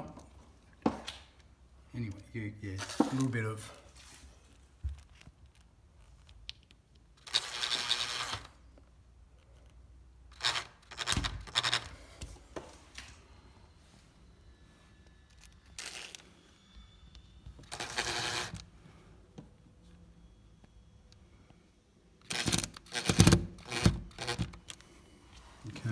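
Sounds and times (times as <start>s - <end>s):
plastic fixings clicking: 22.2s - 24.9s.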